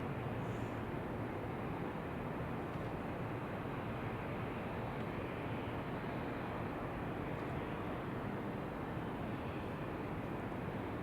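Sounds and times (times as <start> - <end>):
wind with white noise: 0.0 - 11.0.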